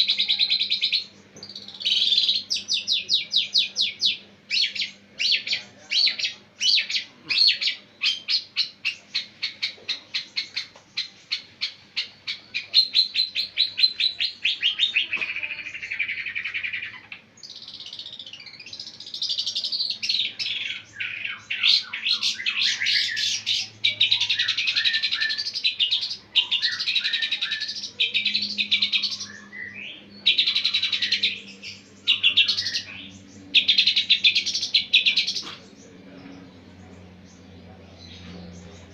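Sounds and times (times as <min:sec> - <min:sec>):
bird singing with rapid trill: 0:00.0 - 0:38.9.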